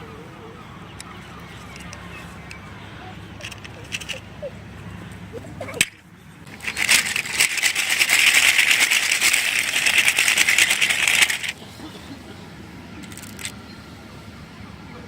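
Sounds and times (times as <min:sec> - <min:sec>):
plastic toy parts rattling: 0:03.4 - 0:04.2, 0:05.8 - 0:11.6, 0:13.0 - 0:13.5.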